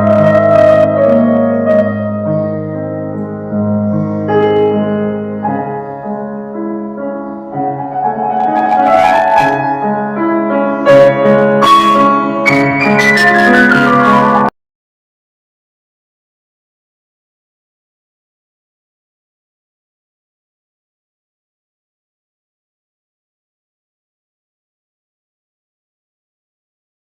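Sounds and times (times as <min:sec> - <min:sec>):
keyboard chords: 0:00.0 - 0:14.5.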